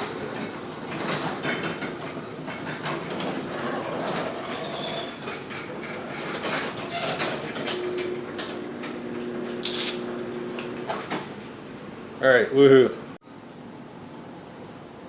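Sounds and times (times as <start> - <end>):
garage door rolling with clicks: 0.0 - 12.0.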